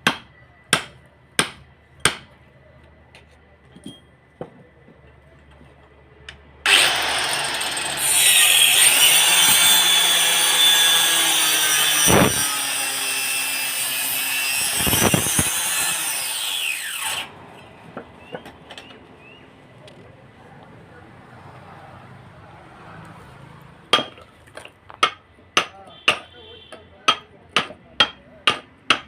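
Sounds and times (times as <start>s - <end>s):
power saw cutting wood: 6.6s - 17.4s.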